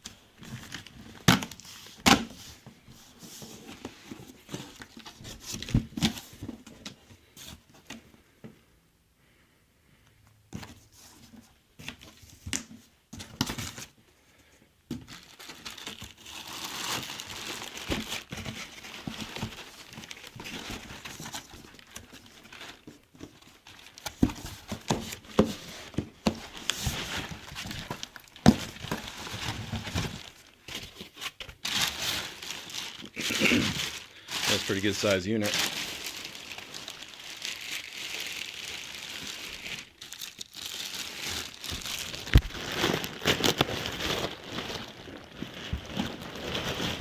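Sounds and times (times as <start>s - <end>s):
plastic wrapping crinkling and tearing: 0.0s - 2.6s, 3.2s - 6.5s, 15.0s - 47.0s.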